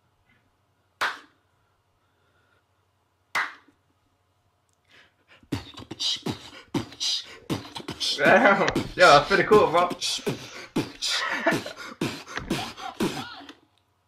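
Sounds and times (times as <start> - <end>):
person beatboxing: 5.5 - 13.6.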